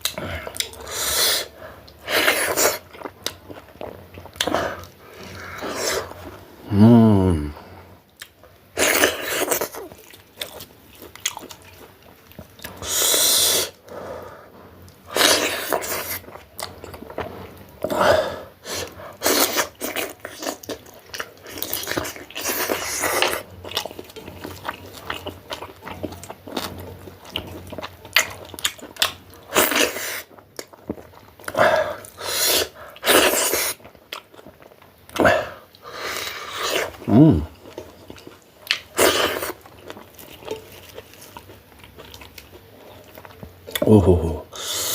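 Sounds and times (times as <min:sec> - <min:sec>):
wet chewing and smacking: 0:01.8 - 0:06.4, 0:08.1 - 0:12.9, 0:14.8 - 0:18.0, 0:18.6 - 0:43.9
loud breathy hisses: 0:12.8 - 0:14.3.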